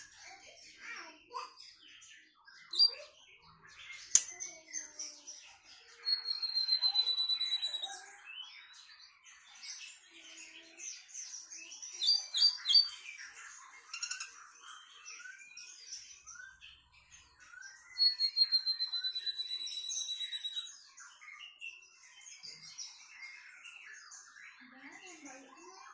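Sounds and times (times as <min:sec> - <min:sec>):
songbird twittering: 0:02.6 - 0:04.9, 0:05.8 - 0:08.9, 0:11.8 - 0:25.2
high bird trill: 0:02.7 - 0:03.1, 0:05.9 - 0:08.2, 0:12.0 - 0:16.6, 0:17.5 - 0:20.8.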